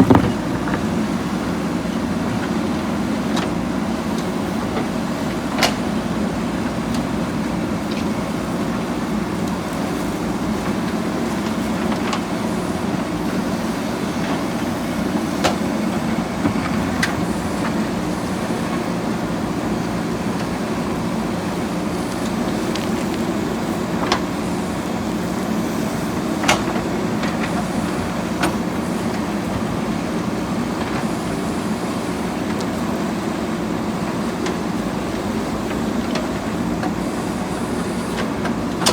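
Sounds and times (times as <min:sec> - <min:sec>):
sharp knocks: 0:00.0 - 0:01.0
diesel engine running: 0:00.0 - 0:38.9.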